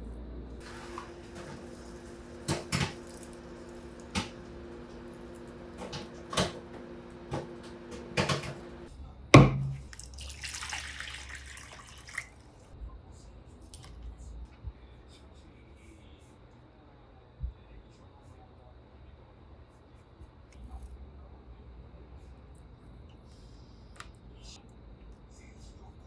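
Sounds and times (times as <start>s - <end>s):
tap water running into sink: 0.6s - 8.7s, 9.4s - 12.6s.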